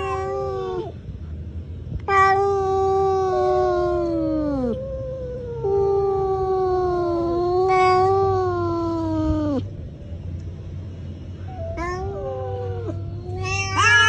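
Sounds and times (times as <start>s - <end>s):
cat yowling: 0.0s - 1.0s, 2.0s - 9.7s, 11.4s - 14.0s
low hum: 0.0s - 14.0s.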